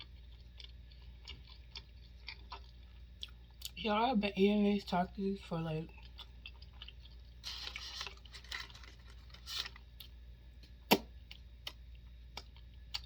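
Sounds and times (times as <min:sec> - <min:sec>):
chewing and wet mouth noises: 0:00.0 - 0:03.8, 0:05.8 - 0:09.1, 0:11.3 - 0:13.0.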